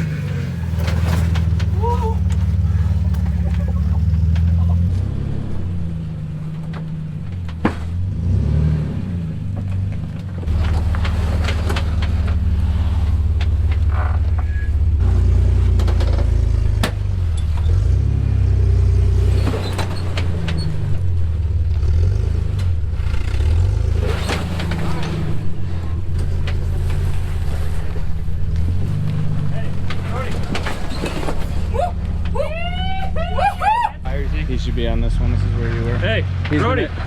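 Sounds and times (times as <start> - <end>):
off-road vehicle engine crawling: 0.0 - 37.0.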